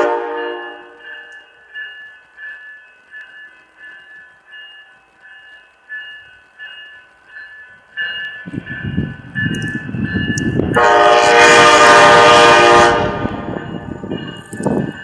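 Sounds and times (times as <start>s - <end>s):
train air horn blast: 0.0s - 1.3s, 10.8s - 13.5s
crossing bell dinging: 0.0s - 15.0s
train rumble: 0.0s - 15.0s.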